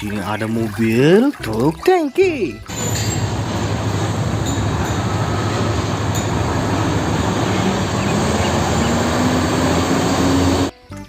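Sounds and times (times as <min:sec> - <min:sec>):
faint rising tone: 0:02.7 - 0:10.7
vehicle engine and rolling rumble: 0:02.7 - 0:10.7.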